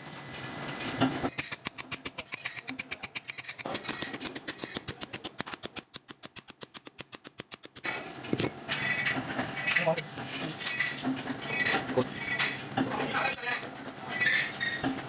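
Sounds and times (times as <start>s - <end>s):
rapid mechanical clicking: 1.3s - 8.0s.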